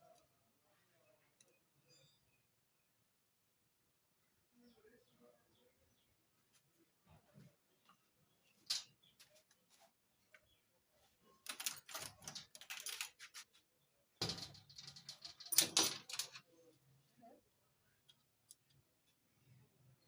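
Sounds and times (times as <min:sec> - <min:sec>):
metal parts and tools rattling: 0:11.4 - 0:13.4, 0:14.2 - 0:16.5.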